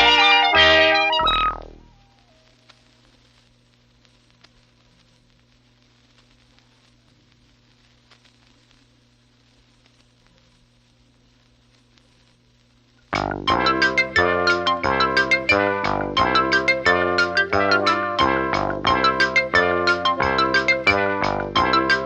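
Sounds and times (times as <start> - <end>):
music with quick bright notes: 0.0 - 2.1, 13.1 - 22.0
faint hiss: 0.0 - 22.0.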